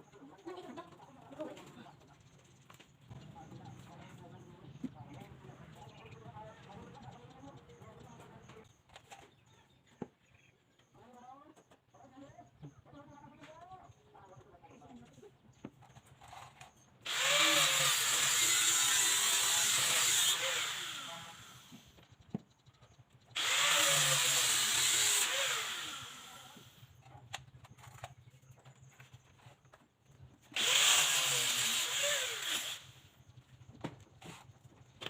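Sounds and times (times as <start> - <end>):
motor winding down: 17.0 - 22.0, 23.4 - 27.1, 30.6 - 33.2
power tool cutting wood: 17.0 - 22.0, 23.4 - 26.9, 30.5 - 33.1.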